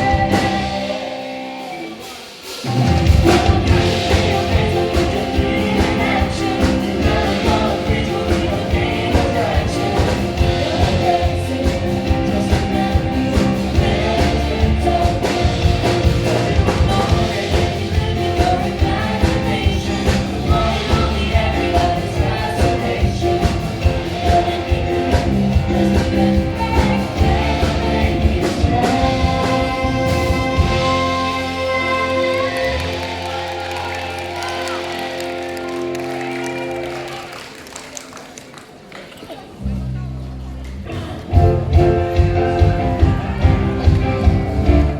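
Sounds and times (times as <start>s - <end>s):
music with steady drum beat: 0.0s - 35.0s, 41.3s - 44.9s
person singing: 0.0s - 36.0s.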